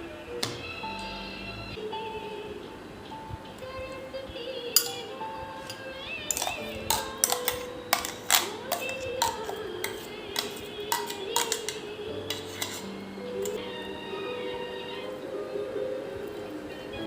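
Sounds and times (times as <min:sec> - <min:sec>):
soft background music: 0:00.0 - 0:17.0
hard objects clicking and clinking: 0:05.7 - 0:13.6.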